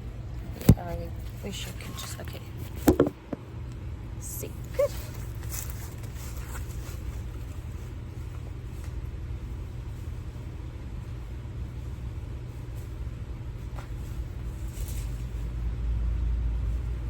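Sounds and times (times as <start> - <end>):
low mechanical rumble: 0.0 - 17.0
faint rustles: 4.4 - 17.0.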